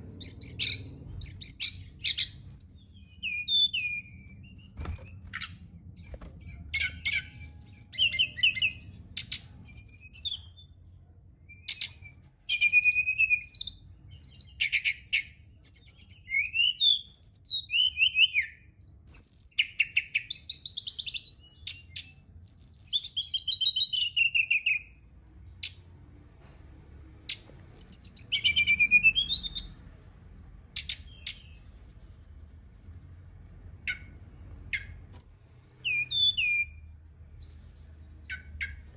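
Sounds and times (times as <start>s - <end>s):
faint low hum: 0.0s - 16.5s, 24.8s - 38.9s
bird singing whistled trills: 0.2s - 25.0s, 27.8s - 29.8s, 30.6s - 33.3s, 34.7s - 38.9s.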